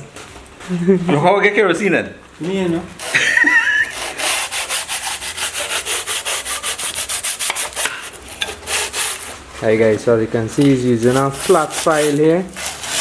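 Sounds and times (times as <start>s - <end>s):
file rubbing on metal: 3.0s - 9.5s, 11.0s - 13.0s.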